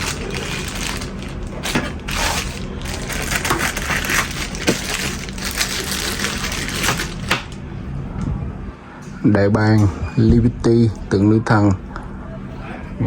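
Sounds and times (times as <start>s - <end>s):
packaging rustling and crinkling: 0.0s - 7.6s.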